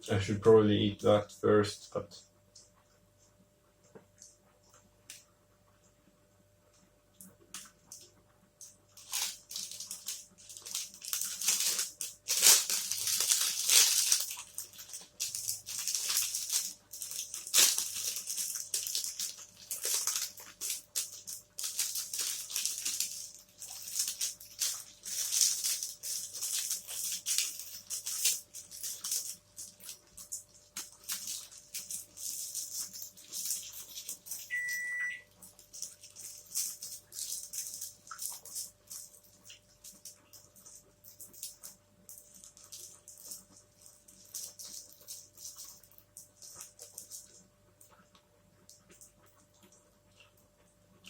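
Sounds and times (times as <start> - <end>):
person chewing crunchily: 9.0 - 34.5.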